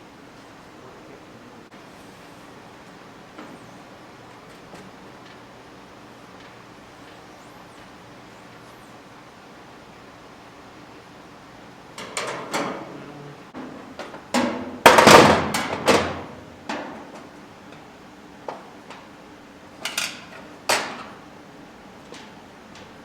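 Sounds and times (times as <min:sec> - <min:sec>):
bangs on sheet metal: 0:14.4 - 0:17.0.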